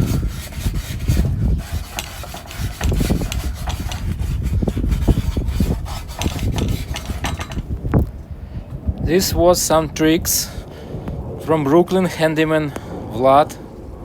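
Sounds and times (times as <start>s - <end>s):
hand scraping metal: 0.0s - 8.1s.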